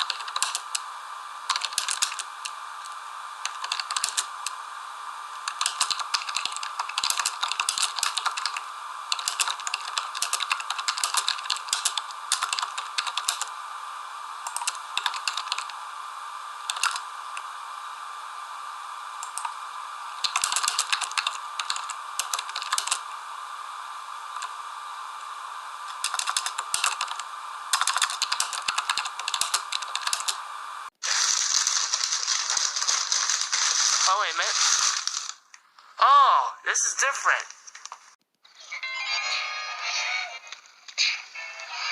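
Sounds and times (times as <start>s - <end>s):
rapid light clicks and taps: 0.0s - 0.8s, 1.5s - 2.6s, 3.4s - 4.6s, 5.4s - 13.5s, 14.5s - 15.8s, 16.7s - 17.5s, 20.2s - 23.0s, 25.9s - 30.4s.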